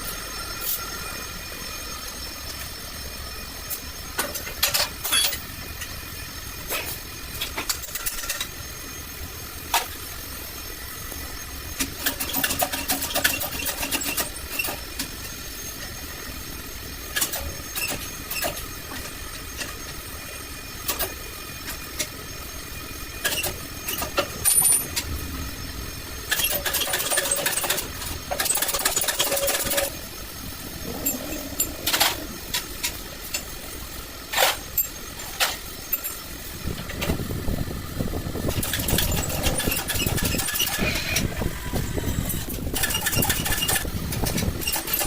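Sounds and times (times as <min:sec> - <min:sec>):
steady background hum: 0:00.0 - 0:45.0
rattling bursts: 0:26.0 - 0:37.2, 0:37.8 - 0:45.0.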